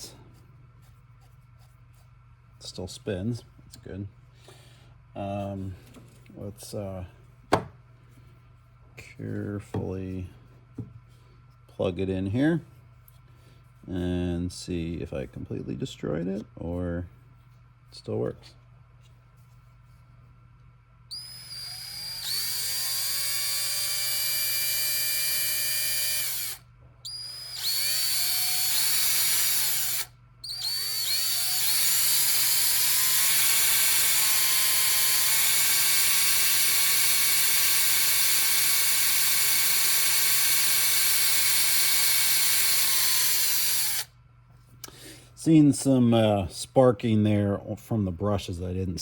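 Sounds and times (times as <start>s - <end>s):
electric drill motor whining: 21.1s - 44.1s.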